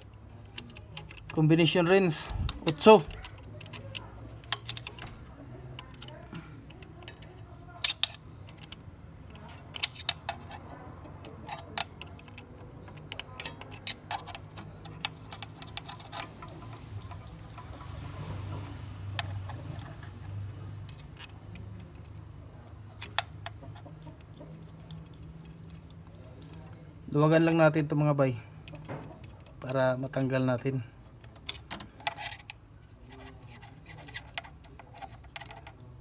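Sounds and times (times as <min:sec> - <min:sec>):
metallic wrench clicks and clinks: 0:00.4 - 0:05.2, 0:11.5 - 0:17.4, 0:23.0 - 0:26.7.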